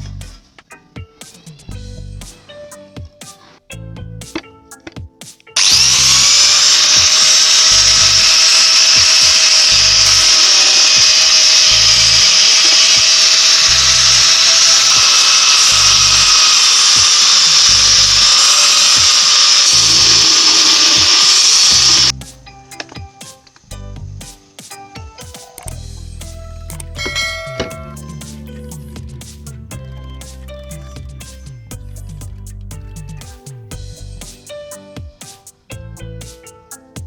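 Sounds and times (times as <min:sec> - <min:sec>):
background music with beat: 0:00.0 - 0:05.7, 0:22.1 - 0:37.0
power tool motor whining: 0:05.6 - 0:22.1.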